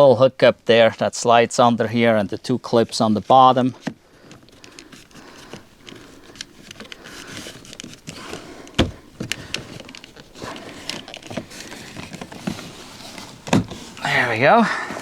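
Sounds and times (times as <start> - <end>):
plastic trim clicks and knocks: 7.6 - 10.2
hard thump on car door: 8.8 - 9.0.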